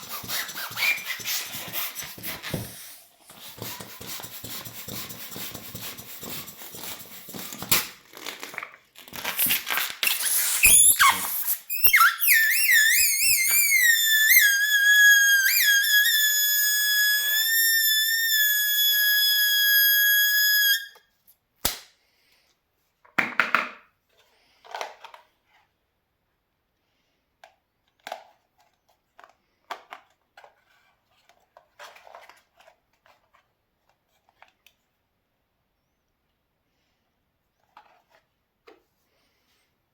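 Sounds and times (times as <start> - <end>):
balloon air squealing out: 0.0 - 1.6, 9.2 - 21.0
rubbery squeaks and rustles: 0.0 - 21.0
sharp snap: 21.6 - 21.9.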